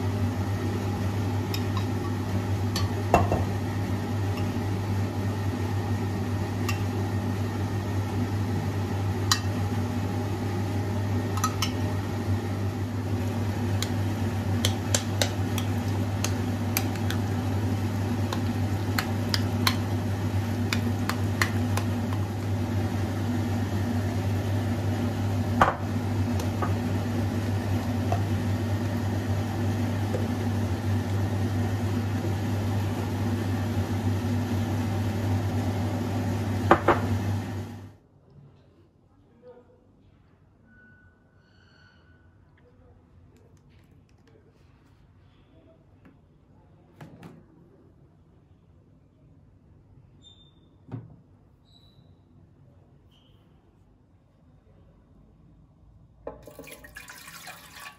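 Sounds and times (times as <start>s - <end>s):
appliance humming: 0.0s - 38.0s, 56.2s - 57.9s.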